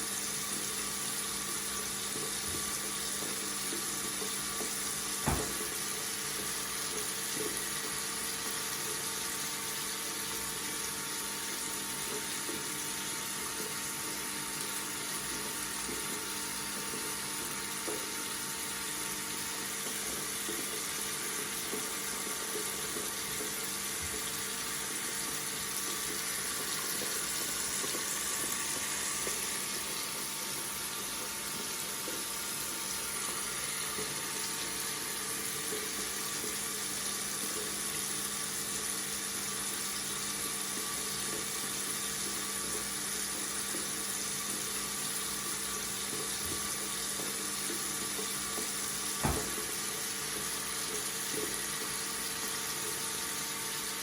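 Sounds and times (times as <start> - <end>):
faucet water running into sink: 0.0 - 54.0
sharp knock: 5.3 - 5.6, 49.2 - 49.6.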